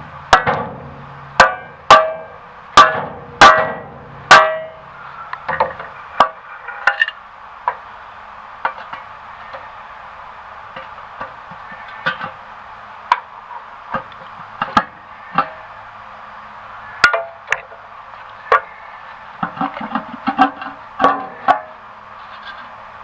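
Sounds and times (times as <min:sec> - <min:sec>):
steady low hum: 0:00.0 - 0:23.0
metal tools clanking on engine: 0:00.2 - 0:07.8, 0:17.0 - 0:22.8.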